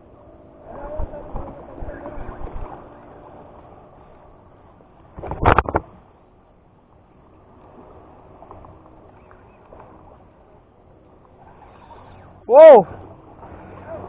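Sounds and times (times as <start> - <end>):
wind: 0.0 - 14.0
sea water washing: 0.1 - 14.0.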